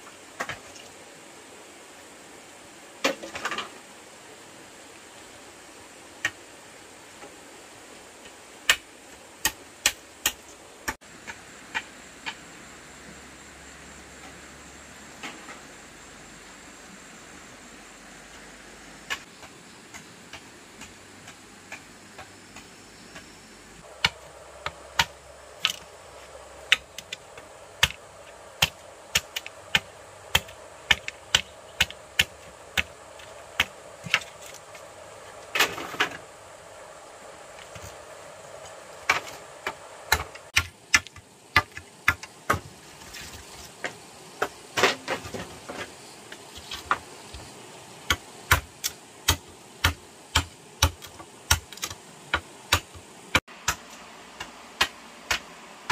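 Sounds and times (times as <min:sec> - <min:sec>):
faint steady hiss: 0:00.0 - 0:55.9.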